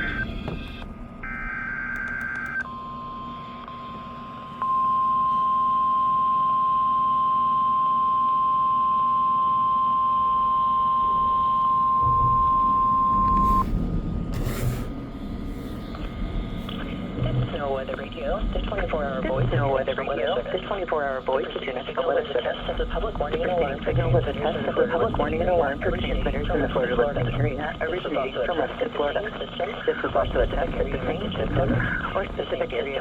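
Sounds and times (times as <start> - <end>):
radio static: 0.0 - 0.8, 13.2 - 13.8, 15.5 - 33.0
steady alarm beep: 0.0 - 13.8.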